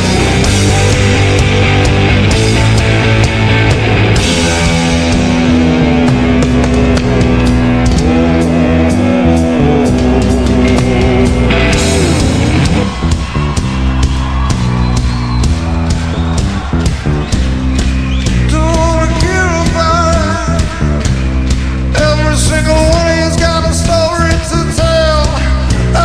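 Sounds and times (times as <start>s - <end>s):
rock music: 0.0s - 26.0s
person singing: 18.4s - 21.0s, 22.0s - 26.0s.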